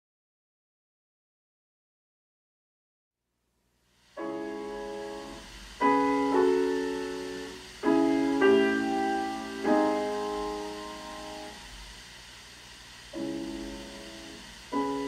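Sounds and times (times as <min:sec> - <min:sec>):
piano chords through loudspeakers: 0:04.2 - 0:12.1, 0:13.1 - 0:15.0.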